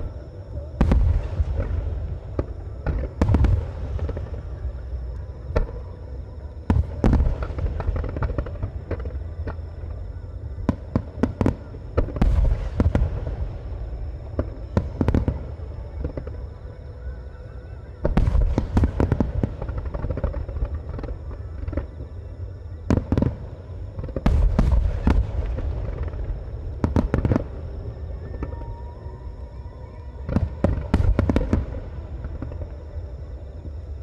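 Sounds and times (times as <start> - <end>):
fireworks bursting with sharp bangs: 0.8 - 4.8, 6.7 - 9.9, 10.6 - 16.4, 18.0 - 22.1, 22.9 - 28.6, 30.2 - 32.7.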